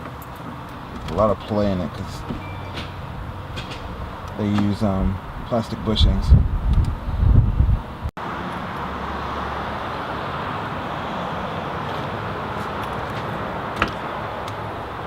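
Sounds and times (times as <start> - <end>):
road traffic noise: 0.0 - 15.0.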